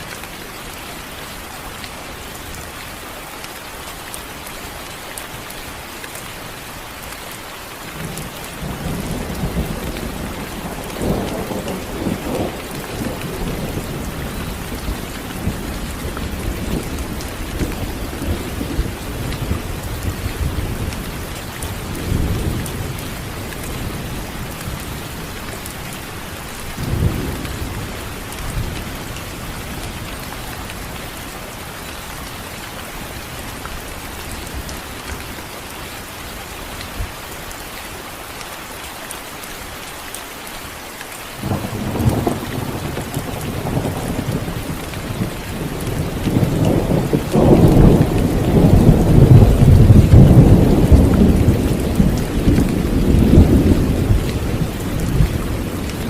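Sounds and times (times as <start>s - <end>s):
heavy rain: 0.0s - 56.0s
thunder rumbling: 8.0s - 25.3s, 41.4s - 56.0s.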